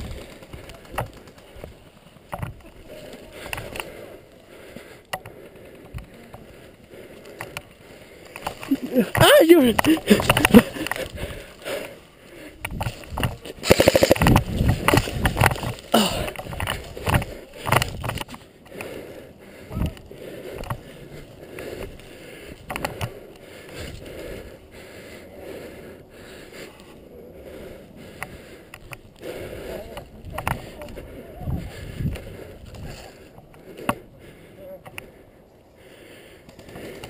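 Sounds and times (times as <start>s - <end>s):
rapid burst of clicks: 12.6s - 18.9s.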